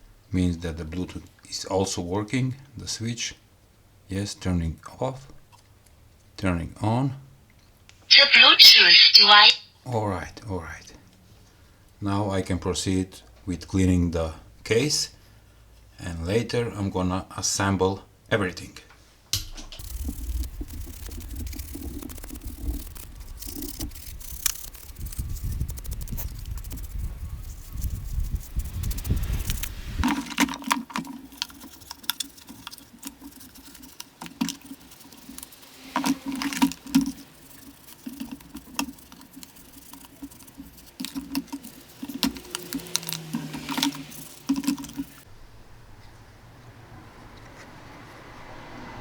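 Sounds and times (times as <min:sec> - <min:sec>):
scrubbing plastic case: 0:19.8 - 0:45.2.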